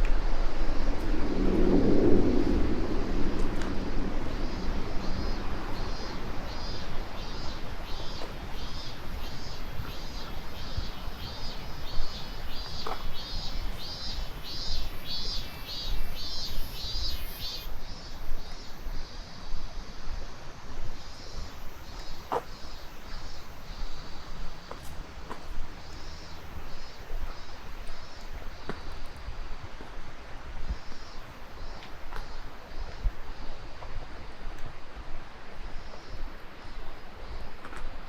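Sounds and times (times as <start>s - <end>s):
steady rushing noise: 0.0s - 17.2s.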